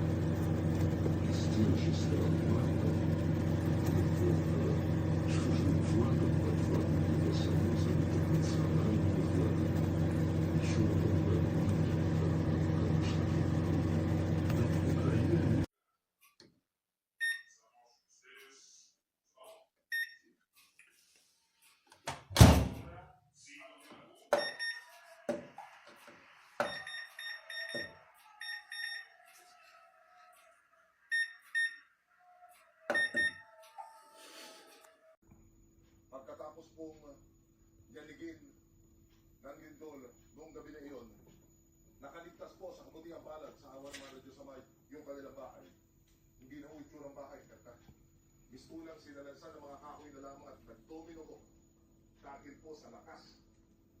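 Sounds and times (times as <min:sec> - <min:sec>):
microwave oven humming: 0:00.0 - 0:15.7, 0:26.6 - 0:29.1, 0:35.3 - 0:54.0
microwave short high beeps: 0:24.4 - 0:24.9, 0:26.6 - 0:29.1, 0:32.9 - 0:33.4.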